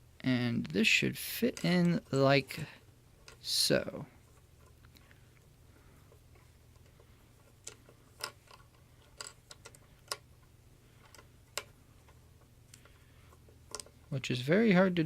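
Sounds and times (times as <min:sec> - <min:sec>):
low steady hum: 0:00.0 - 0:15.0
plastic toy parts clicking: 0:07.6 - 0:10.3, 0:13.7 - 0:13.9.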